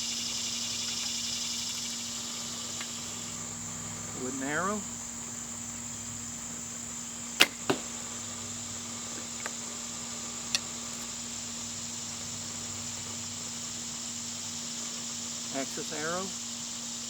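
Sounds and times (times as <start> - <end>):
bow string snap on release: 7.4 - 7.9
arrow knock: 7.4 - 8.0
faint arrow tap: 7.4 - 8.0.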